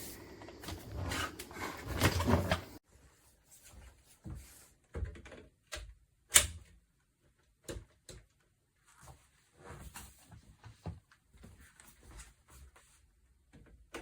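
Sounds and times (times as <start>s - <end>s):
plastic scraping rustle: 0.0s - 2.8s.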